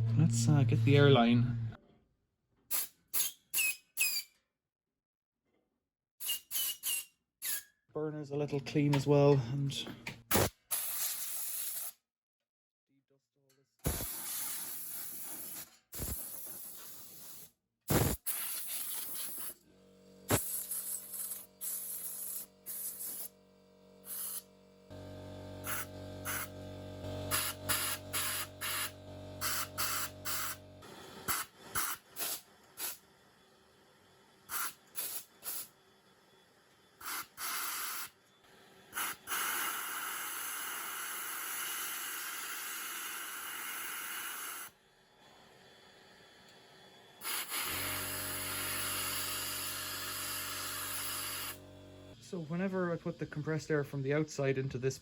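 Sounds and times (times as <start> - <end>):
low motor hum: 0.0 - 1.8, 19.6 - 20.5, 23.3 - 30.8, 51.6 - 53.4
compressed air hissing: 13.8 - 19.6, 20.3 - 23.3, 24.0 - 24.5, 25.6 - 26.5, 27.3 - 33.1, 34.4 - 35.8, 37.0 - 46.4, 47.2 - 51.6.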